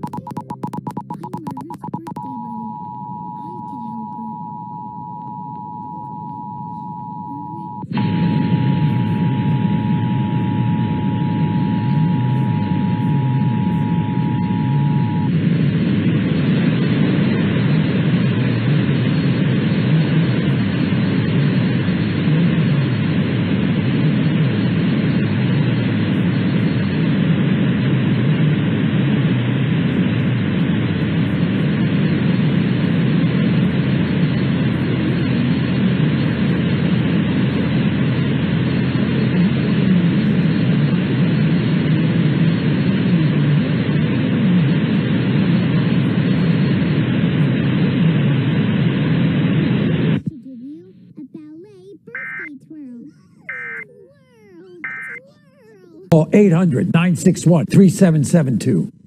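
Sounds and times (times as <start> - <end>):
broadcast static hiss: 0.0 - 59.0
two-tone alert signal: 53.5 - 53.8, 54.8 - 55.2.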